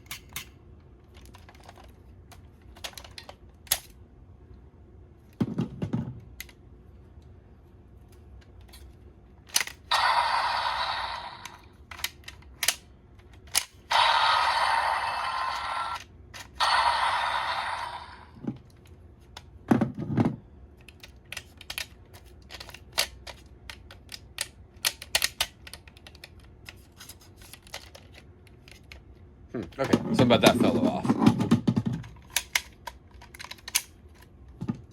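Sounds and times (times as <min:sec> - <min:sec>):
small plastic clicks and snaps: 0:20.8 - 0:26.8.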